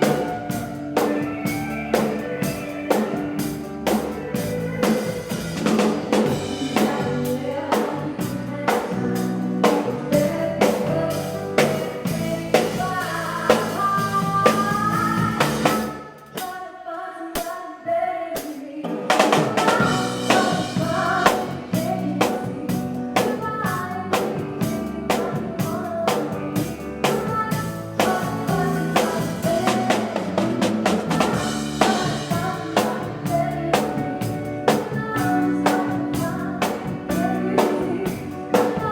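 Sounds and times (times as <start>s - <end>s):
held guitar chords: 0.0s - 16.0s
live rock band playing: 0.0s - 16.3s, 19.1s - 38.9s.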